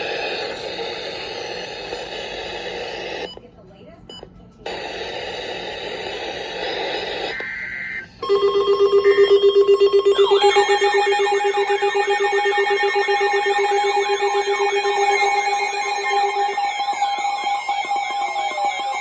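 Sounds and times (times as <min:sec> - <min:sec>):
rapidly pulsing alarm tone: 0:00.0 - 0:03.3, 0:04.7 - 0:19.0
static hiss: 0:00.0 - 0:03.3, 0:04.7 - 0:08.1
data tones: 0:00.0 - 0:03.4, 0:04.1 - 0:19.0
warbling siren: 0:07.0 - 0:19.0.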